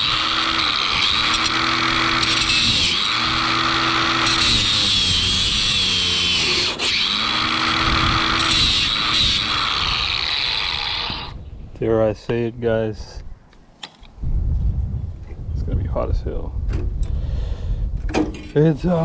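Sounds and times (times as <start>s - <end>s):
angle grinder cutting aluminium: 0.0s - 11.4s.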